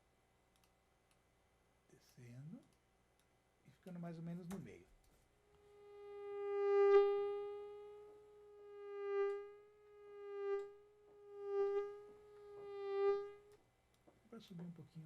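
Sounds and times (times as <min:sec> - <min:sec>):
synthesized mosquito buzz: 0:05.4 - 0:13.7.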